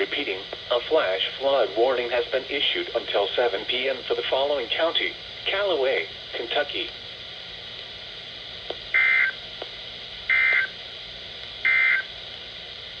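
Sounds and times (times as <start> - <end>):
two-tone digital data bursts: 11.7 - 12.0.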